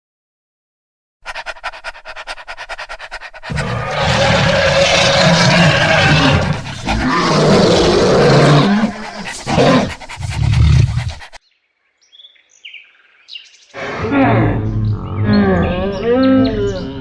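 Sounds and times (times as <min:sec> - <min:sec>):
loud harsh animal calls: 0:01.3 - 0:11.4, 0:13.8 - 0:17.0.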